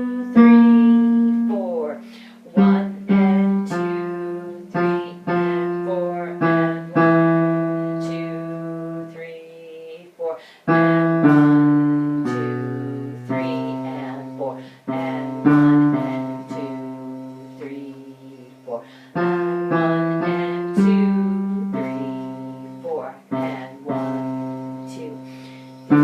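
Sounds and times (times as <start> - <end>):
slow low piano notes: 0.0 - 9.4, 10.7 - 26.0.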